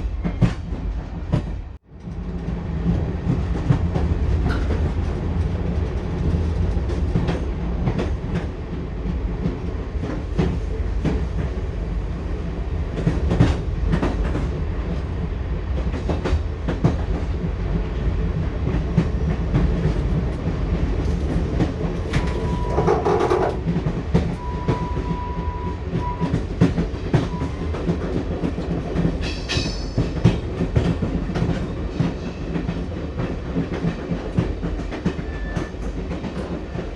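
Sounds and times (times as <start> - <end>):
train carriage rumble: 0.0 - 36.9
wheels clacking over rail joints: 20.9 - 25.1.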